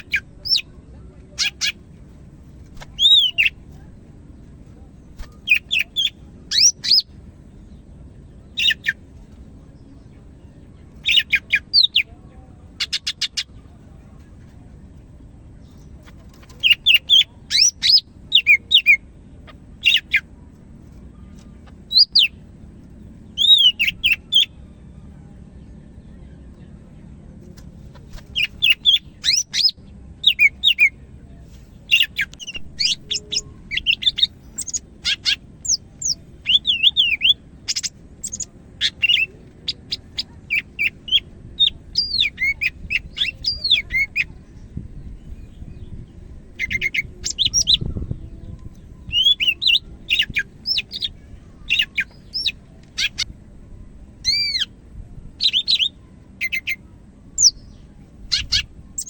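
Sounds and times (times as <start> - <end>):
songbird chirping and whistling: 2.8 - 3.6, 5.2 - 7.1, 8.4 - 9.0, 11.0 - 12.2, 15.6 - 19.0, 19.8 - 20.3, 21.4 - 22.4, 23.2 - 24.6, 27.9 - 31.0, 31.9 - 53.3, 54.2 - 54.8, 55.4 - 59.0.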